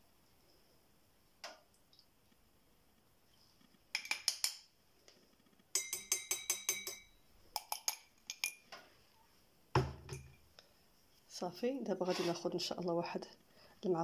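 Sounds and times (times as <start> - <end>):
metal spoon tapping drinking glass: 4.0 - 4.6, 5.7 - 8.6.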